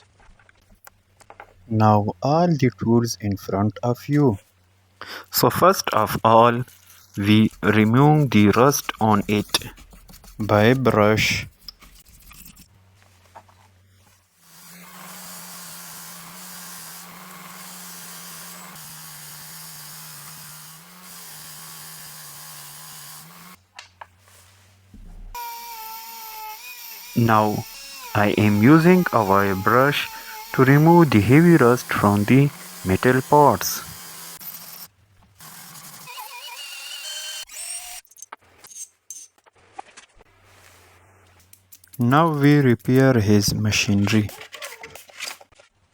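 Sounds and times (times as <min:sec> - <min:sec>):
wire brush scrubbing rusty metal: 0:06.4 - 0:36.1
wire brush scouring metal: 0:06.6 - 0:13.3, 0:27.0 - 0:34.9
motor humming: 0:14.4 - 0:23.6, 0:24.9 - 0:38.0
metal parts clicking and knocking: 0:38.0 - 0:39.4.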